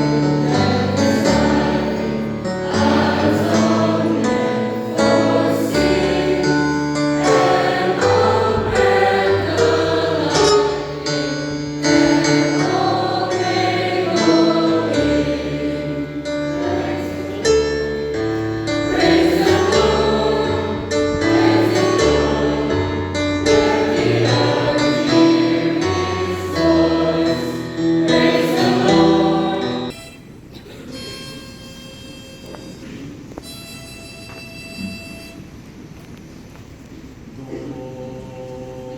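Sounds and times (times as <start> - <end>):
group of voices singing: 0.0 - 30.0
instrumental accompaniment: 0.0 - 35.8.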